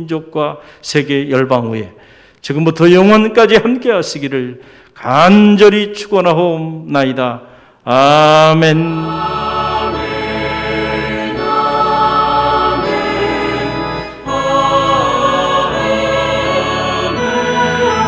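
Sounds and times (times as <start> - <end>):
choir singing sustained chords: 8.1 - 18.0.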